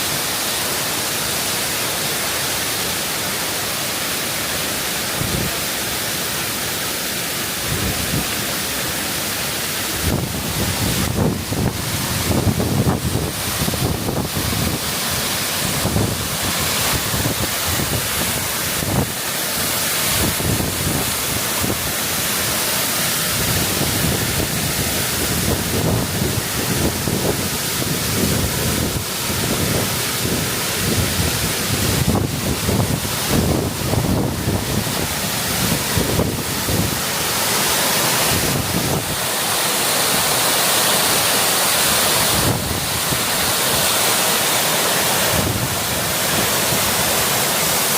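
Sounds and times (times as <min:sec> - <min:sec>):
waterfall rushing: 0:00.0 - 0:47.9
wind rumbling on microphone: 0:09.9 - 0:19.2, 0:20.1 - 0:21.9, 0:23.3 - 0:37.1, 0:38.2 - 0:39.2, 0:42.2 - 0:43.6, 0:45.3 - 0:47.0.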